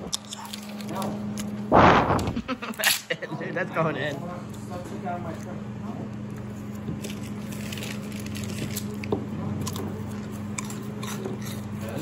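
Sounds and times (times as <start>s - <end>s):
steady low hum: 0.0s - 12.0s
person chewing crunchy snack: 7.0s - 12.0s.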